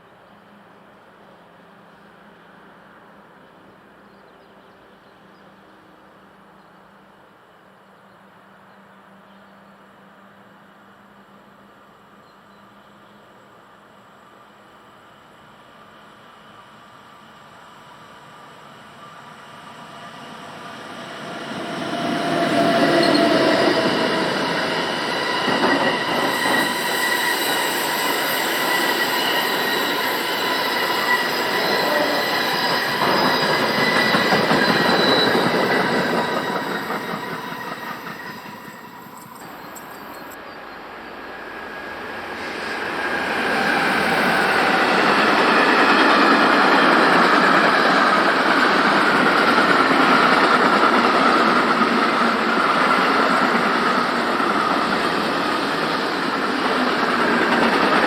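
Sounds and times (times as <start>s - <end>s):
train rail noise: 0.0s - 58.0s
train wheels squealing: 16.5s - 58.0s.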